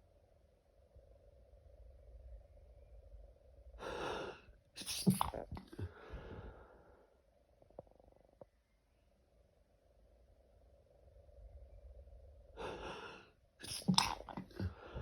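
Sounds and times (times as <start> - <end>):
person sneezing: 4.0 - 5.9, 12.6 - 15.0.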